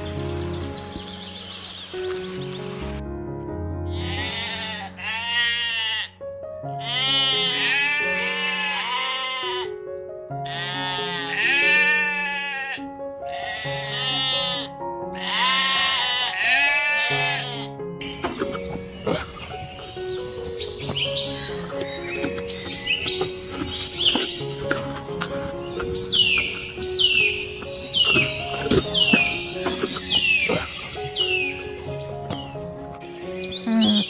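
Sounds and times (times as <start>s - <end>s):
soft background music: 0.0s - 34.0s
goat bleating: 3.9s - 6.1s, 6.8s - 9.7s, 10.4s - 17.7s, 18.3s - 32.6s.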